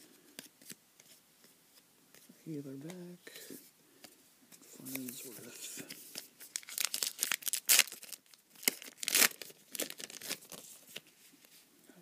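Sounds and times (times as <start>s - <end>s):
plastic wrapper tearing and crinkling: 6.1s - 11.0s.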